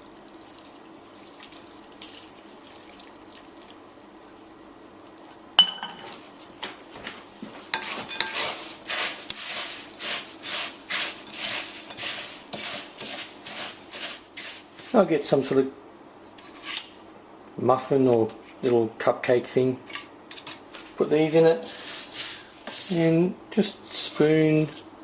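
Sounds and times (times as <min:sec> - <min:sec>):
metal clink on bowl: 0:05.6 - 0:06.1, 0:07.8 - 0:08.4
spoon stirring dry cereal: 0:07.8 - 0:15.1, 0:21.6 - 0:23.1.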